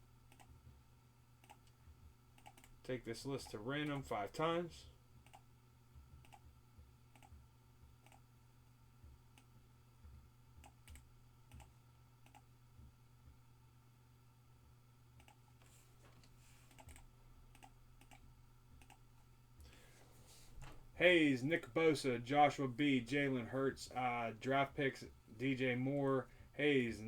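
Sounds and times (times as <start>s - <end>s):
computer mouse clicks: 0.3s - 0.6s, 1.4s - 1.8s, 2.4s - 2.8s, 5.2s - 5.4s, 6.1s - 6.5s, 7.1s - 7.4s, 8.0s - 8.2s, 10.6s - 12.4s, 15.2s - 15.4s, 16.7s - 19.0s.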